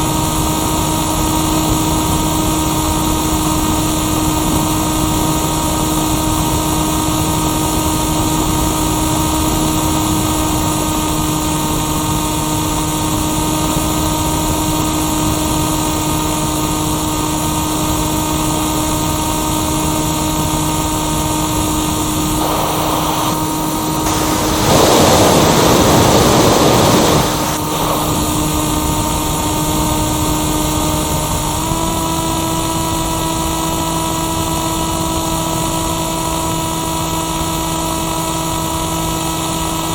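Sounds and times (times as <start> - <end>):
electric motor and propeller whine: 0.0 - 39.9
loud rush of noise: 21.2 - 30.1.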